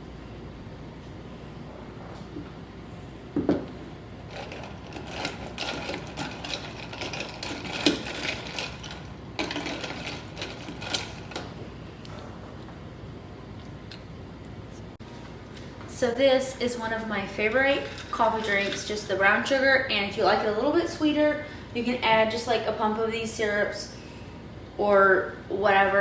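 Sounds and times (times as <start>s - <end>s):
kitchen utensils clicking and rattling: 4.3s - 11.5s, 17.4s - 19.2s.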